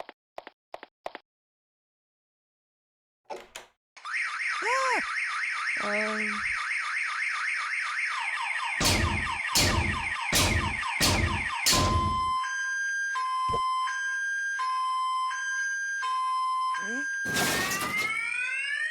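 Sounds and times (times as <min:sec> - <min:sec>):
car alarm siren: 0:04.0 - 0:18.9.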